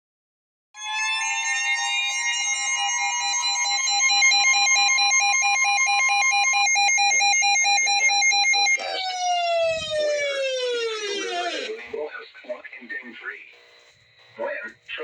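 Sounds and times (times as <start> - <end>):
pulsing emergency alert tone: 0.8 - 11.9.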